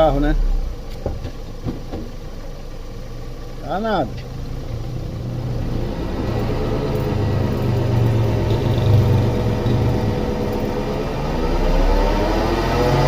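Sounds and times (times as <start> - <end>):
wheel bearings droning: 0.0 - 13.0.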